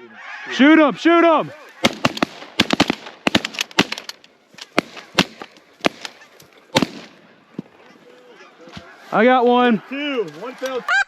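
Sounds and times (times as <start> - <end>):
shotgun blasts: 1.8 - 4.1, 4.7 - 7.2.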